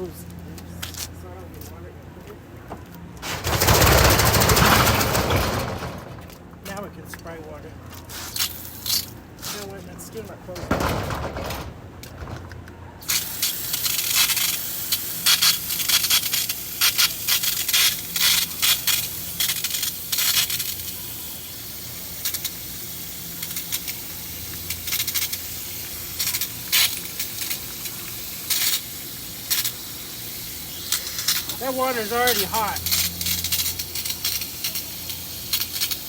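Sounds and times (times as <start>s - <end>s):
water spraying onto metal: 13.0s - 36.0s.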